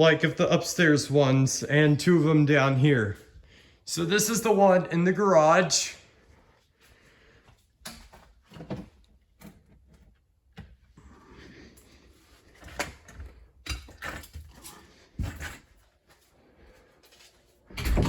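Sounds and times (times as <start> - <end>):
footsteps indoors: 0.2 - 11.0, 13.9 - 18.0
door handling knocks and clicks: 17.8 - 18.0.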